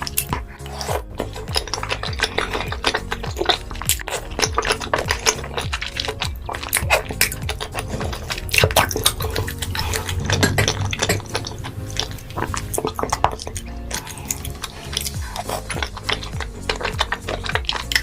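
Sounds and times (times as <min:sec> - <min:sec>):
crisp chewing and biting: 0:00.0 - 0:18.0.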